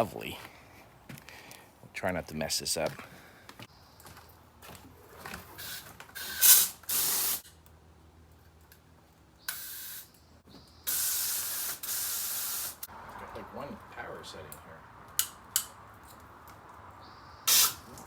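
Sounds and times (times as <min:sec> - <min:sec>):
hose nozzle spraying water: 0:05.6 - 0:07.4, 0:10.9 - 0:12.9, 0:17.5 - 0:18.0.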